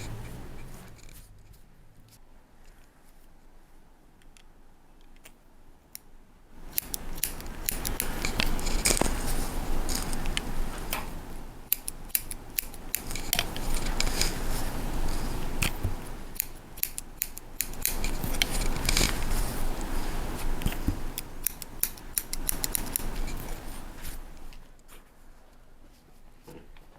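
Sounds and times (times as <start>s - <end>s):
hair rustling: 0.0s - 1.7s, 6.6s - 24.6s
scissors snipping hair: 6.0s - 24.2s.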